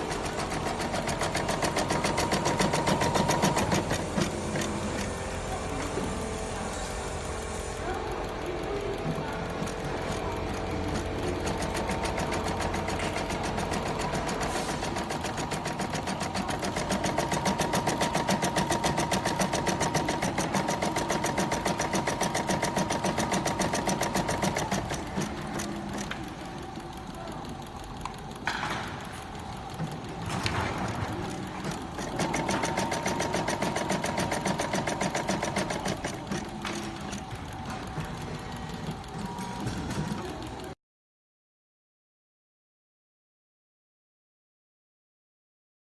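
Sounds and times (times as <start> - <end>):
sewing machine stitching: 0.0 - 40.8.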